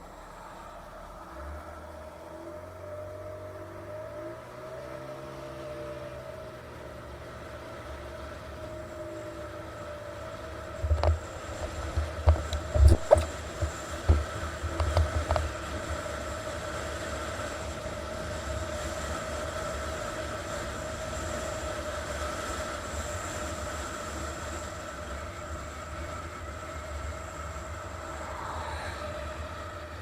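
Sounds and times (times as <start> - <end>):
wind rumbling on microphone: 10.7 - 17.7.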